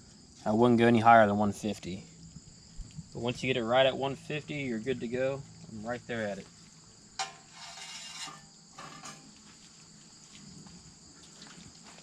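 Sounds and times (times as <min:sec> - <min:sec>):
insects chirring: 0:00.0 - 0:12.0.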